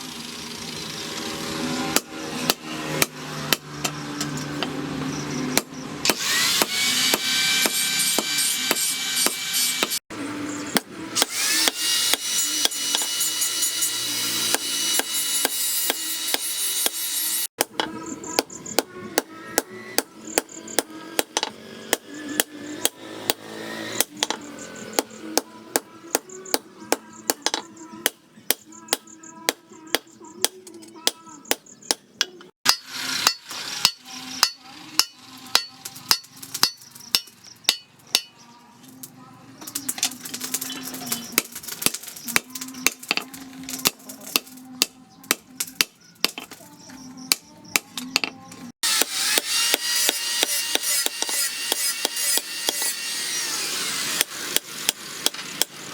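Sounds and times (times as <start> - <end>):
hammer striking steel on anvil: 10.7 - 38.4, 47.3 - 53.0.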